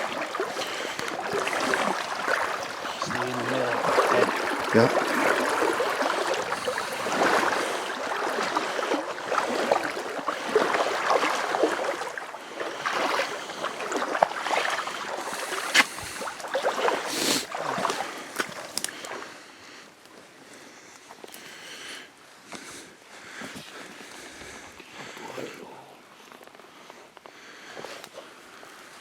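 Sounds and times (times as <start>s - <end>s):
people wading through water: 0.0s - 21.6s.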